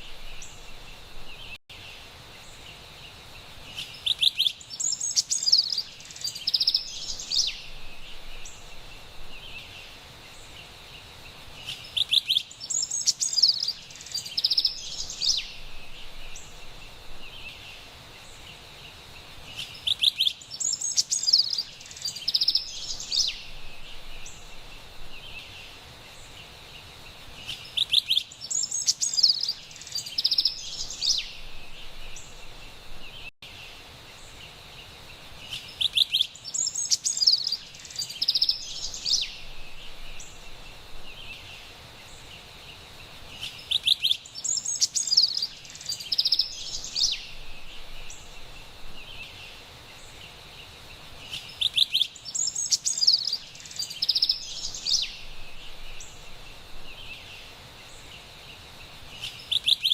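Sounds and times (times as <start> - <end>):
faint steady hiss: 0.0 - 59.9
wren singing: 3.7 - 10.7, 11.6 - 18.5, 19.4 - 33.3, 35.4 - 59.9.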